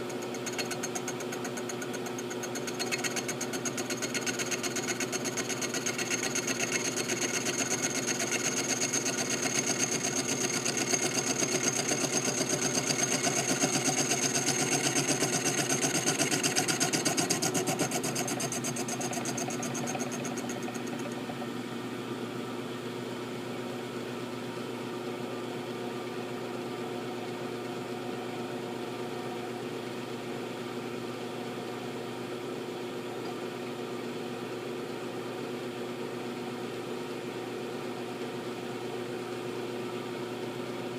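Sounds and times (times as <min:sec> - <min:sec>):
milling machine cutting metal: 0:00.1 - 0:21.4.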